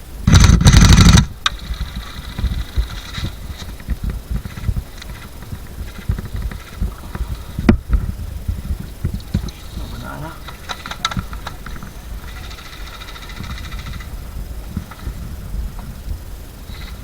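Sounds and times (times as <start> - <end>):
rustling of movement: 0.0 - 17.0
sharp crack: 0.2 - 8.1.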